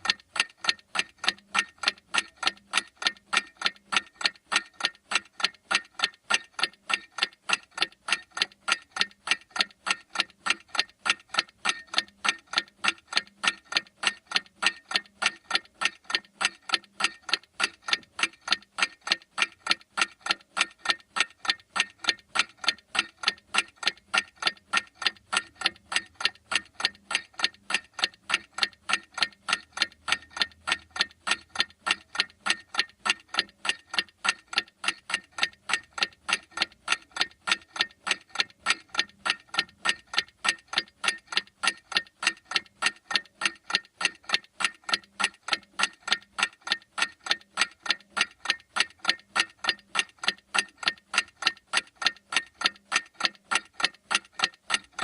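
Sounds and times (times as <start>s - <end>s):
clock ticking: 0.0s - 55.0s.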